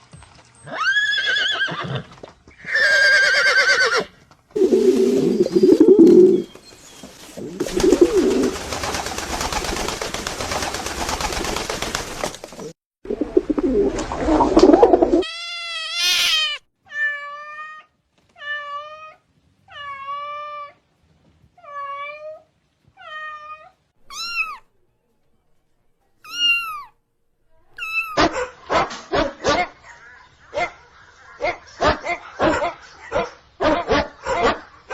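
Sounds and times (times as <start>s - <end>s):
cat meowing: 15.2s - 20.6s, 23.0s - 24.7s, 26.2s - 27.0s, 27.7s - 28.3s.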